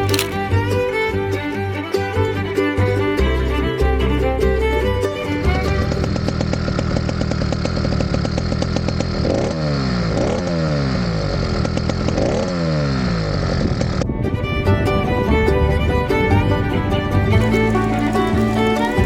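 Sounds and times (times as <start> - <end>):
two-stroke engine revving: 5.9 - 14.0, 17.4 - 19.0.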